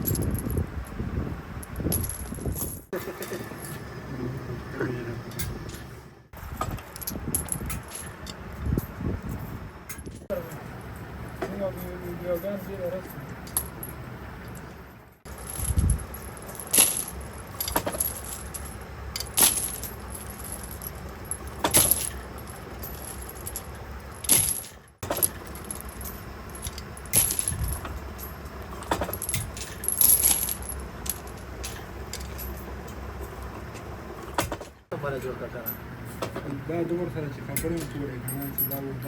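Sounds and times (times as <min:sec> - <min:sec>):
low steady hum: 0:00.0 - 0:39.0
sharp metal clinks: 0:37.5 - 0:39.0.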